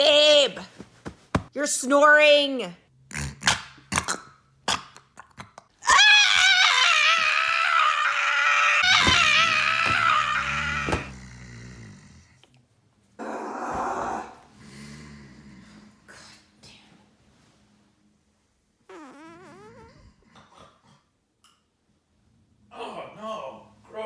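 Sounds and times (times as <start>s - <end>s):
high wavering comedic wail: 5.8s - 11.2s
faint low groans: 8.8s - 17.2s
breathy snort: 11.0s - 12.4s
low rumbling snore: 11.0s - 12.5s, 14.6s - 16.5s.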